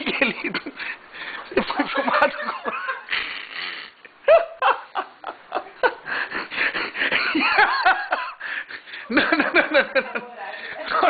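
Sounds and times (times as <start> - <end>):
people laughing and giggling: 1.5 - 3.4, 4.3 - 11.0.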